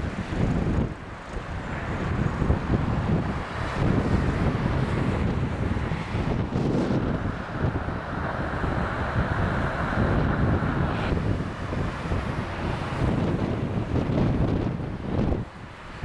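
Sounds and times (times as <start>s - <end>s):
jet engines rushing: 0.0s - 16.0s
wind buffeting microphone: 0.0s - 16.0s.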